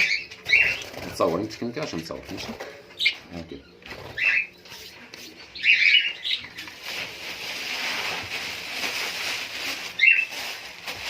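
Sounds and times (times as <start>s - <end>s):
budgerigars chirping: 0.0s - 1.0s, 2.4s - 6.7s, 10.0s - 10.3s.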